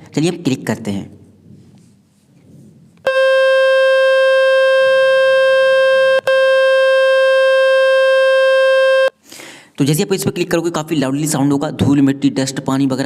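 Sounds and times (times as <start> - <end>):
loud buzzy beep: 3.1 - 9.1.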